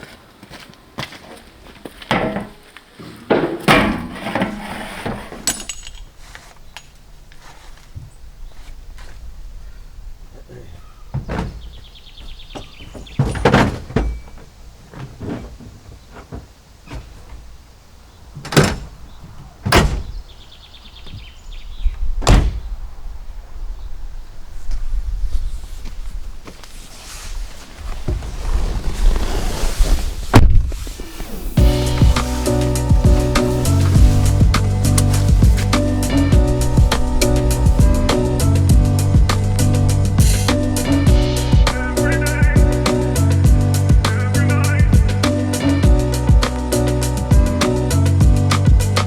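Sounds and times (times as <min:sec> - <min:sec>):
rapid high squeaks: 0:10.8 - 0:17.6, 0:30.8 - 0:43.2
wooden knocks and clatter: 0:10.8 - 0:17.7
heavy knocks: 0:11.1 - 0:17.5, 0:31.6 - 0:43.6
low rumble: 0:31.5 - 0:44.1.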